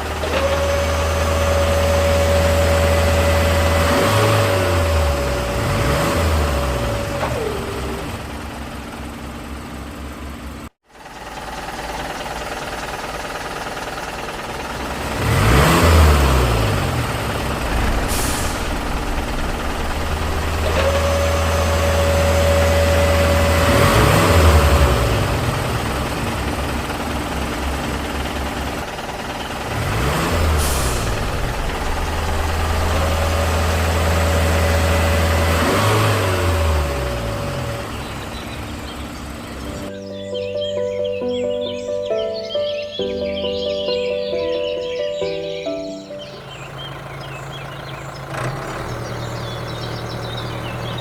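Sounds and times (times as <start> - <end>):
small motor drone sweeping pitch: 0.0 - 8.6, 15.2 - 25.8, 29.7 - 37.6
thin whine: 17.3 - 23.5, 30.4 - 35.2.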